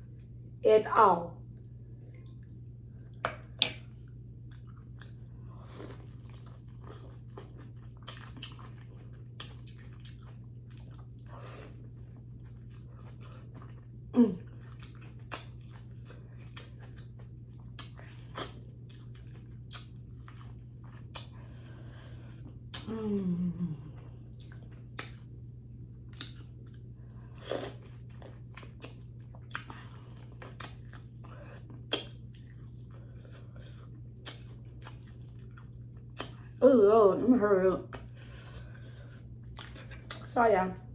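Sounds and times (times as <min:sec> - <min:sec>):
steady low hum: 0:00.0 - 0:40.9
close-up chewing: 0:03.9 - 0:22.9, 0:23.8 - 0:36.6, 0:37.8 - 0:40.4
wet mouth clicks and smacks: 0:15.2 - 0:15.6, 0:21.0 - 0:21.4, 0:24.4 - 0:25.2, 0:26.1 - 0:26.5, 0:30.5 - 0:30.9, 0:31.8 - 0:32.2, 0:34.2 - 0:35.0, 0:36.1 - 0:36.4, 0:39.5 - 0:40.3.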